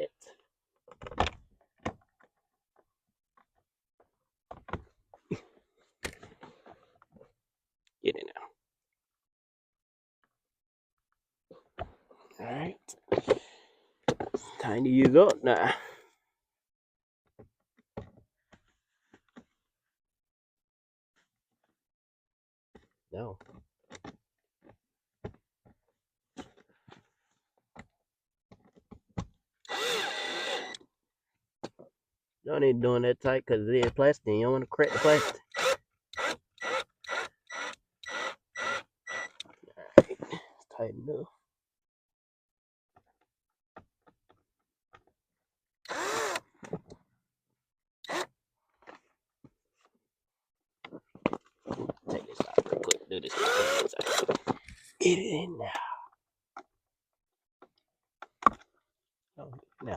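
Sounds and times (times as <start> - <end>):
power drill whining: 29.6 - 30.8, 34.8 - 39.5, 45.8 - 46.6, 48.0 - 48.3, 53.2 - 54.5.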